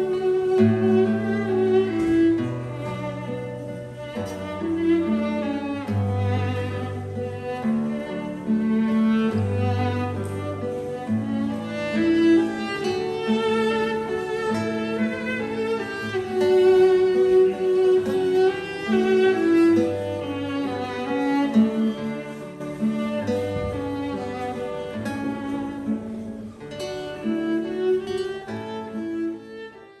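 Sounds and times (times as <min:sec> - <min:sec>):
bowed string slow melody: 0:00.0 - 0:30.0
plucked classical guitar: 0:00.0 - 0:30.0.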